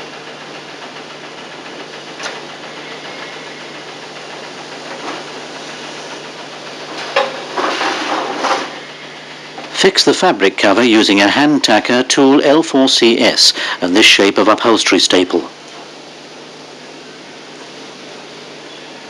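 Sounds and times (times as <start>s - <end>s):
scraping rustling noise: 7.4s - 8.8s.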